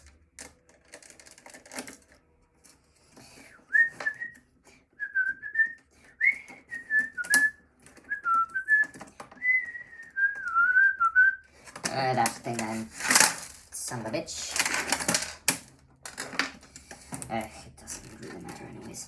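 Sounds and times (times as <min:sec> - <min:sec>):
person whistling a tune: 0:03.5 - 0:04.4, 0:05.0 - 0:11.5
clicks and taps of tools: 0:08.8 - 0:09.7.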